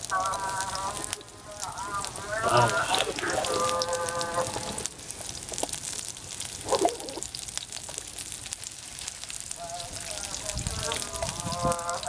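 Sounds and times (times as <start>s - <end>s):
voice-like sound: 0.0s - 4.9s, 6.6s - 7.2s
chilies sizzling in oil: 0.0s - 12.0s.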